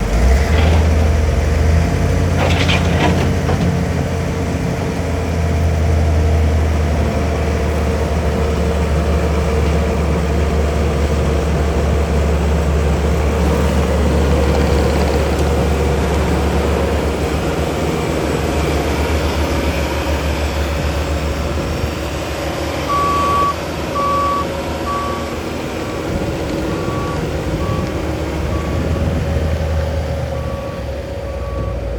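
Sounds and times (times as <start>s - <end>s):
diesel engine running: 0.0s - 31.9s
backup alarm beeping: 22.9s - 26.1s, 26.7s - 29.1s, 30.4s - 31.9s.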